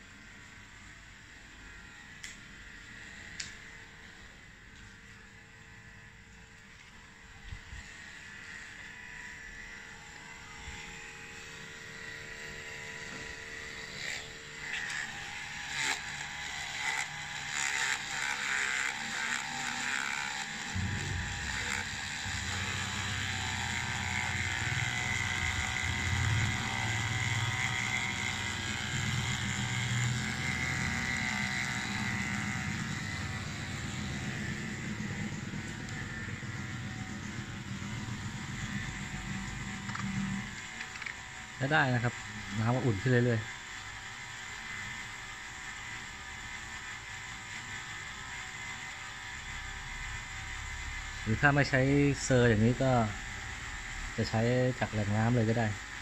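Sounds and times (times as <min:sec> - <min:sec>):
water pump humming: 0:20.3 - 0:43.0.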